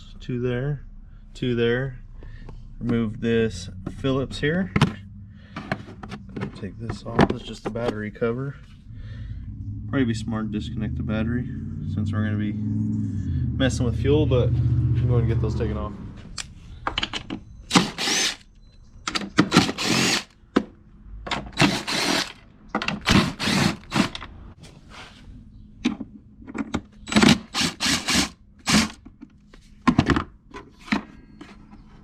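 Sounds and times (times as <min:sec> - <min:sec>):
power drill running in bursts: 0:17.7 - 0:18.4, 0:19.5 - 0:20.3, 0:21.6 - 0:22.4, 0:23.1 - 0:24.1, 0:27.3 - 0:29.0.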